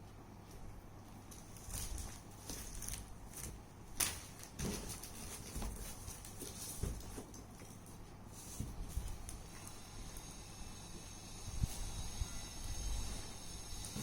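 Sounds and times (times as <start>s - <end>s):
parts and packaging being handled: 0.5s - 9.8s.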